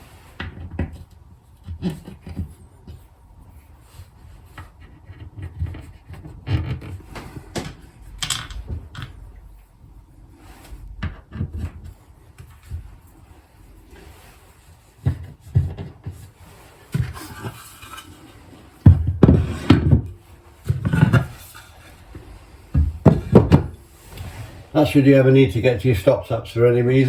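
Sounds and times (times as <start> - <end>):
wooden knocks and clunks: 15.0 - 16.3, 18.8 - 23.8.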